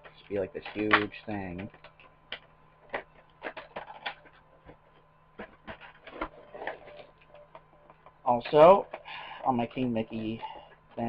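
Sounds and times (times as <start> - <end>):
plastic clicks and rattles: 0.0 - 4.8.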